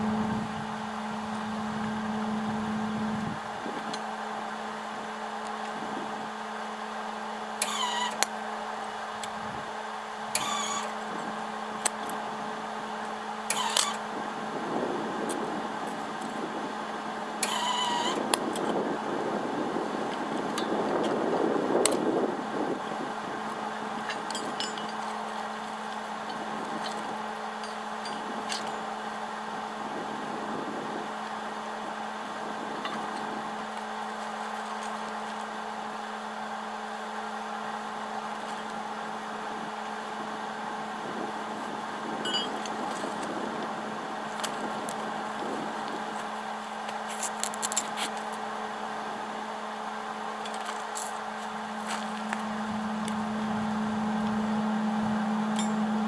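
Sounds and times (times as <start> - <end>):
welding machine humming: 7.4 - 8.4, 10.0 - 12.3, 15.3 - 29.9.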